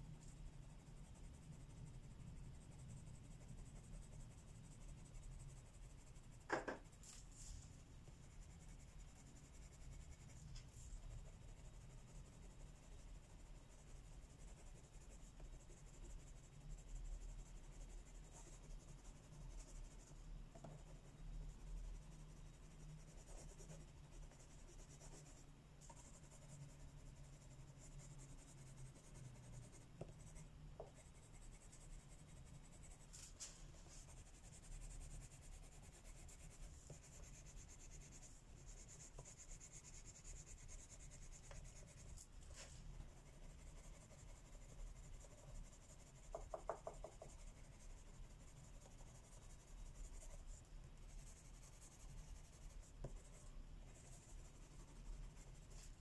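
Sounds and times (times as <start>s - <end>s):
pencil scratching on paper: 0.0s - 56.0s.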